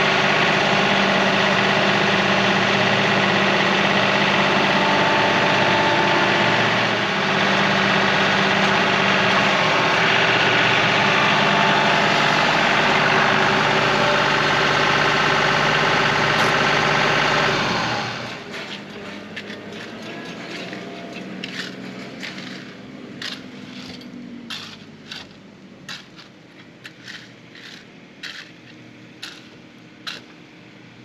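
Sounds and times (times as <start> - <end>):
tractor engine running: 0.0 - 30.4
faint clicks and scrapes: 18.5 - 29.5.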